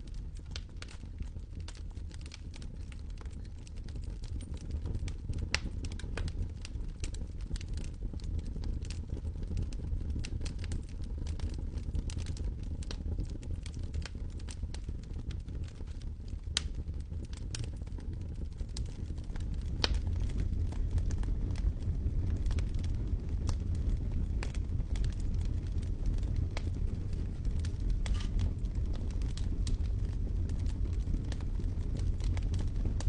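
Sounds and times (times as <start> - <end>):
low rumble: 18.8 - 33.0.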